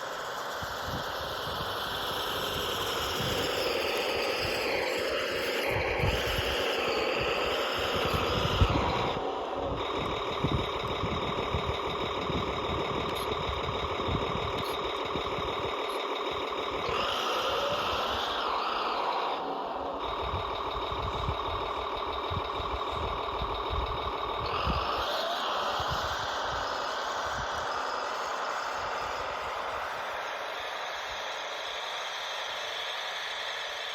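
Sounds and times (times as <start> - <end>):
toy vehicle electric motor whine: 0.0 - 33.9.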